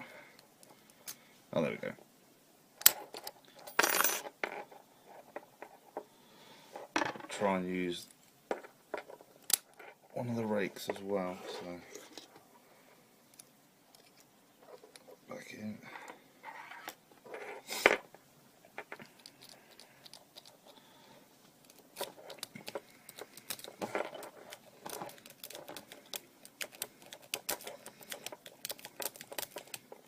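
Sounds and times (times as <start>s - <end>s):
lock pick scraping and clicking: 21.6s - 30.0s.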